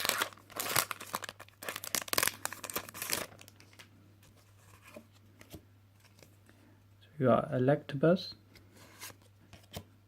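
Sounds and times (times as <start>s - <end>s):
foil wrapper crinkling and tearing: 0.0s - 3.9s.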